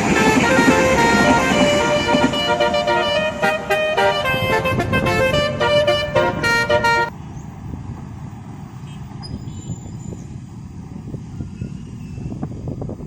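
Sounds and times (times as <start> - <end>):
multi-tone bus horn tune: 0.0 - 7.1.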